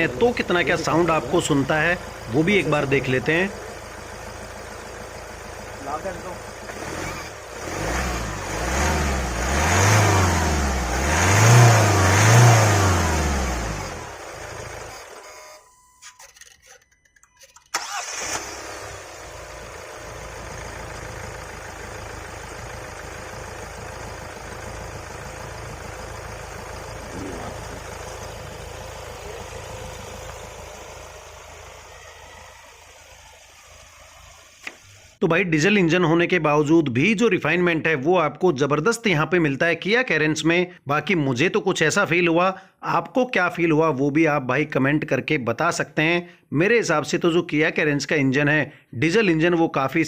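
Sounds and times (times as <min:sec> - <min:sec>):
diesel engine idling: 0:00.0 - 0:15.2, 0:17.8 - 0:35.2
diesel engine revving: 0:00.0 - 0:15.4, 0:17.8 - 0:35.2.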